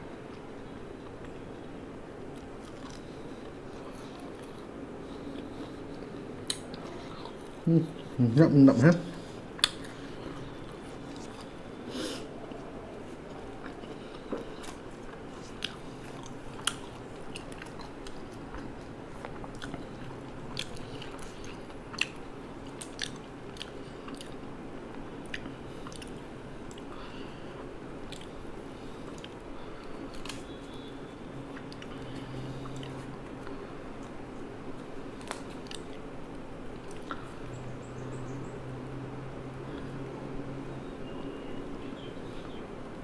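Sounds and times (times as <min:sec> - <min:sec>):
person chewing food: 0:02.3 - 0:08.2, 0:09.1 - 0:37.5.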